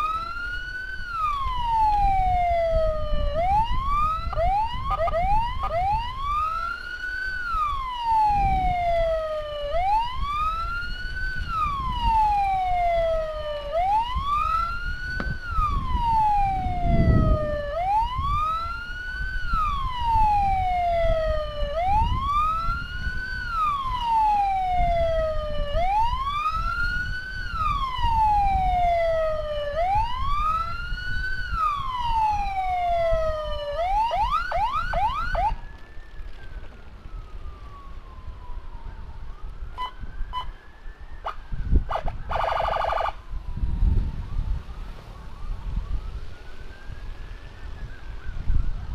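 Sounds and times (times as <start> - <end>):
electronic siren wailing: 0.0 - 48.9
road noise rumble: 0.0 - 48.9.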